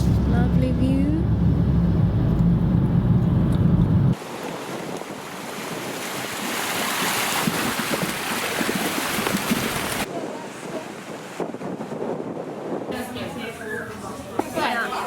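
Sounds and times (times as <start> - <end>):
low vehicle rumble: 0.0 - 4.2
wind: 0.0 - 15.0
sea waves: 4.2 - 15.0.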